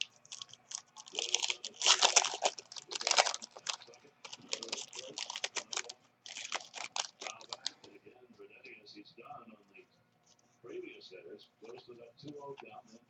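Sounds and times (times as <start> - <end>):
trading cards clicking and rustling: 0.0 - 8.0.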